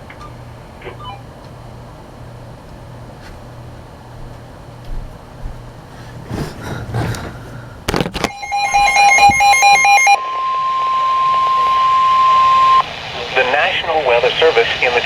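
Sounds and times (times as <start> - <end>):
steady warning alarm tone: 0.0 - 1.4, 8.3 - 12.9
warbling electronic tone: 0.2 - 1.2, 8.3 - 12.8.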